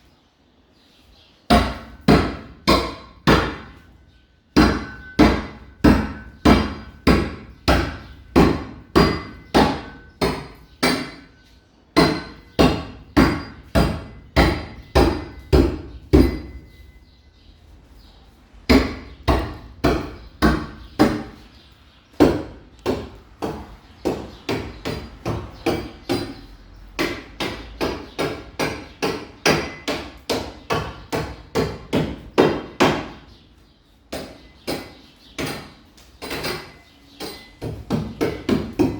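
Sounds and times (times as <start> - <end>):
hammer striking: 1.5 - 3.8, 4.6 - 11.4, 12.0 - 16.9.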